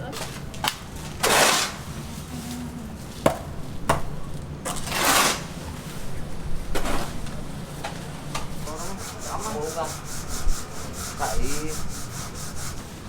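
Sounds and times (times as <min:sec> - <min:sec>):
long scraping stroke: 0:08.6 - 0:13.0.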